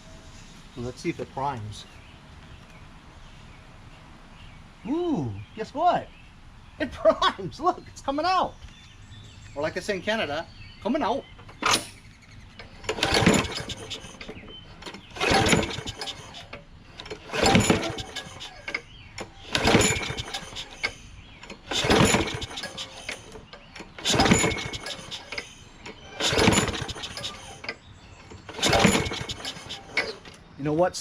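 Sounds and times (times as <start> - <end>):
mower engine pull-start cranking: 11.4 - 30.5.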